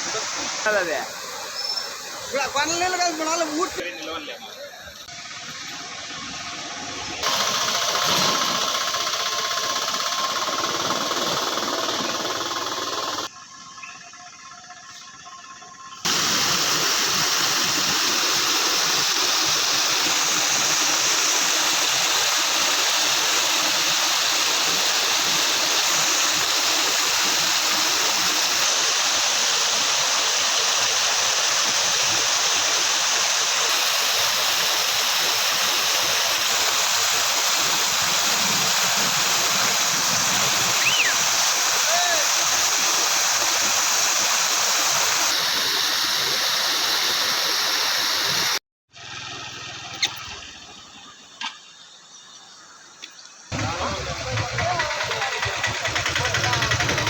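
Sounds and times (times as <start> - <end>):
floodwater rushing: 0.0 - 3.8, 5.3 - 13.3, 16.1 - 48.6.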